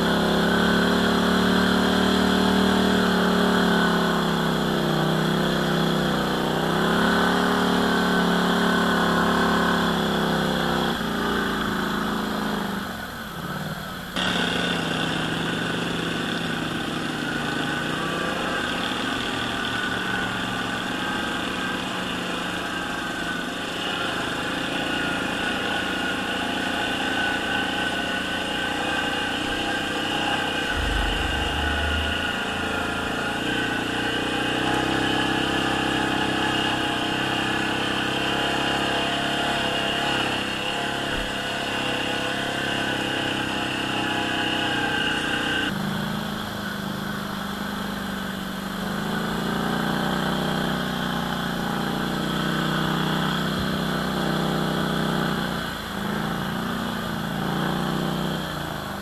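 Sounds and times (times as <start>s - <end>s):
atv engine running: 0.0s - 59.0s
high whine: 29.3s - 34.4s
low thud: 30.7s - 33.7s.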